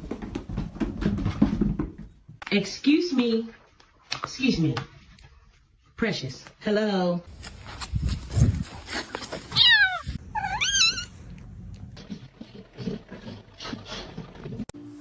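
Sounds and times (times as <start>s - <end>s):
soft rustling: 7.3s - 10.2s
cat meowing: 9.5s - 11.2s.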